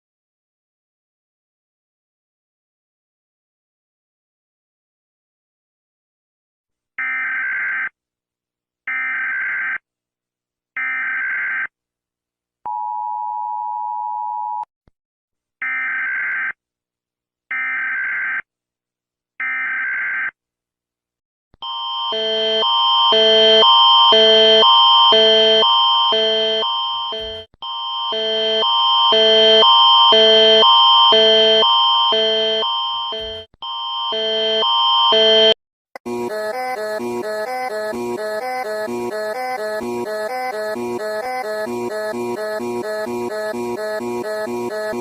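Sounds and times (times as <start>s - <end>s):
loud pulsing alarm: 21.6s - 45.0s
two-tone attention beep: 25.2s - 27.5s, 29.2s - 33.5s.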